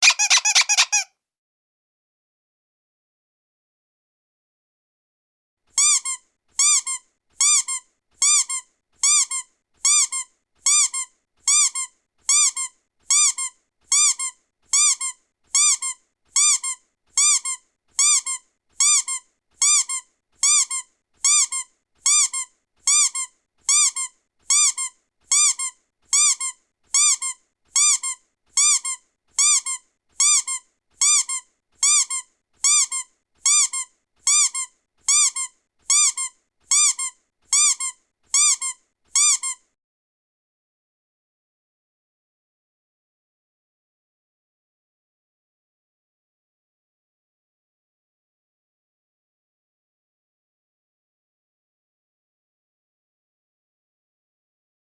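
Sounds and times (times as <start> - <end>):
high-pitched squeak: 0.0 - 1.1.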